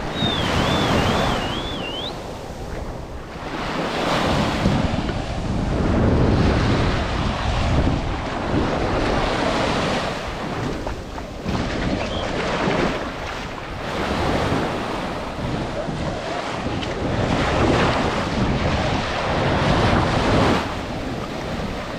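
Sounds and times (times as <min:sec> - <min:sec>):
warbling whistle: 0:00.0 - 0:02.2
ocean waves washing onto beach: 0:00.0 - 0:21.9
wind buffeting the microphone: 0:00.0 - 0:21.9.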